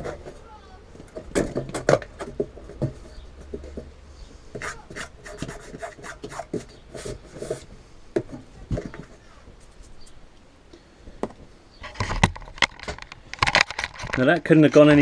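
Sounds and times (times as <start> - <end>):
car stereo scraping against wood: 4.6 - 7.8.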